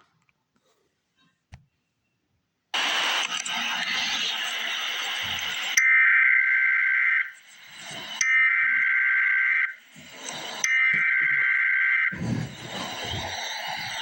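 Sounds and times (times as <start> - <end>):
static hiss: 2.8 - 5.8
warbling digital data bursts: 2.8 - 14.0.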